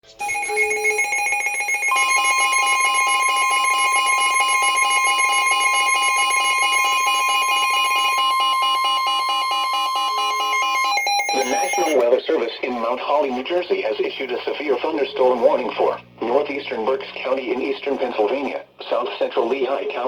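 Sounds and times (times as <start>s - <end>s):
repeating electronic alarm: 0.2s - 12.0s
steady warning tone: 0.2s - 12.0s.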